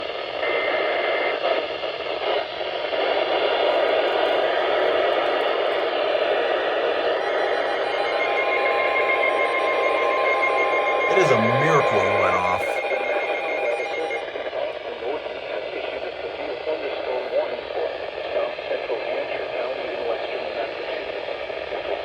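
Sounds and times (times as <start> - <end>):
steady high alert tone: 11.1 - 12.8.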